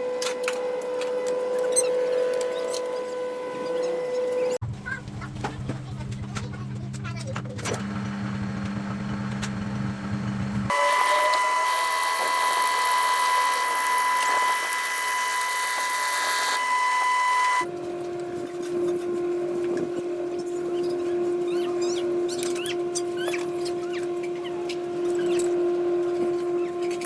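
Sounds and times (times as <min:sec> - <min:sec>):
power tools running: 0:07.6 - 0:21.5.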